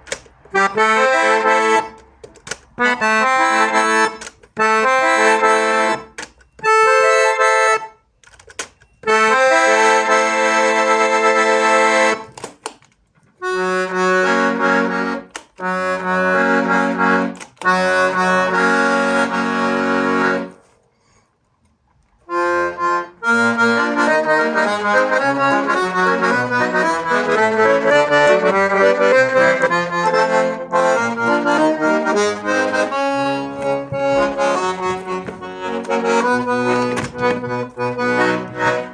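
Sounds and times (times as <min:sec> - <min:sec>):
accordion playing: 0:00.0 - 0:12.7, 0:13.4 - 0:20.8, 0:22.2 - 0:38.9.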